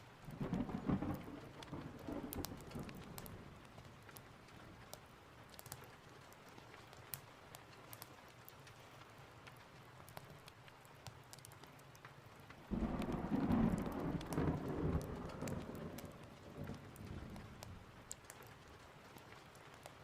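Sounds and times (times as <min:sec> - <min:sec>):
steady rain: 0:00.0 - 0:20.0
thunderclap and low rumble: 0:00.3 - 0:04.2, 0:12.7 - 0:18.2.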